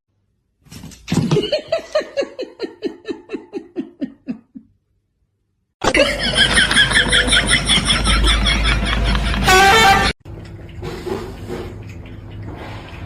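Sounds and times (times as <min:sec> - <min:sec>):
person laughing: 0:01.4 - 0:04.8, 0:05.8 - 0:09.5.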